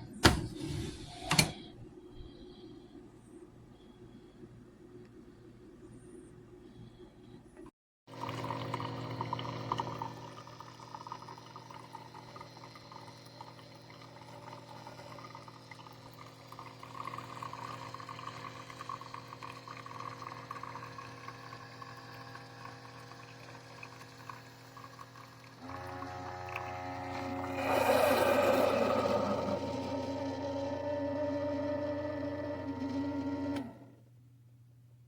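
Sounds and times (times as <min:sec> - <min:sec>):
coffee maker pump hum: 0:06.6 - 0:34.3
liquid pouring into cup: 0:08.1 - 0:30.4.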